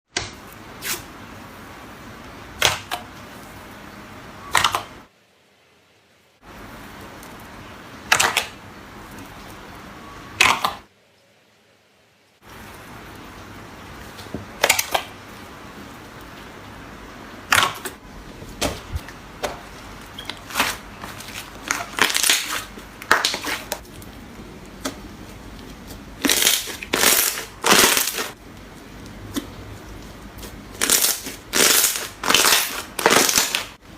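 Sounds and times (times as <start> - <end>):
slime crackling and popping: 14.6 - 15.1, 19.4 - 33.8.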